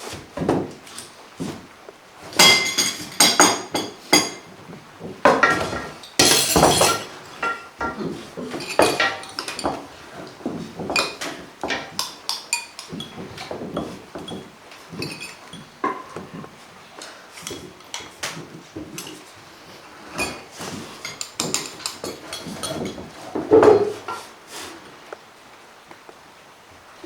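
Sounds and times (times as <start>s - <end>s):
cutlery and dishes clinking: 2.4s - 4.5s, 5.3s - 16.5s, 20.0s - 24.3s.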